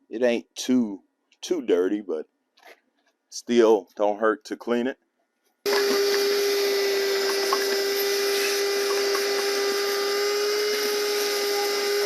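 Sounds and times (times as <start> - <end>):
shop vacuum motor whine: 5.7 - 12.0.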